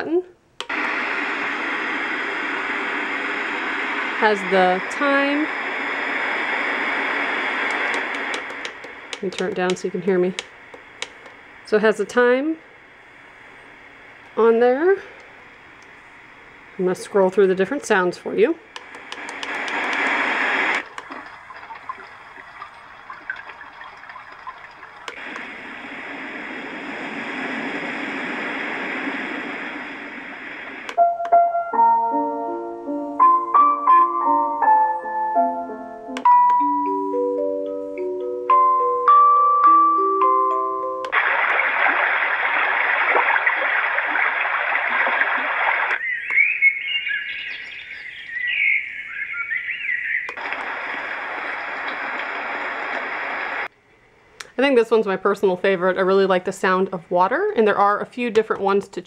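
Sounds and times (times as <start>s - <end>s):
faint hissing nature sound: 0.7s - 31.0s, 41.1s - 58.5s
speaker click: 7.6s - 11.4s, 18.7s - 21.2s, 50.3s - 50.7s
plinking lullaby tune: 31.0s - 41.1s
rushing water hiss: 41.1s - 46.0s
birdsong chirps: 46.0s - 50.4s.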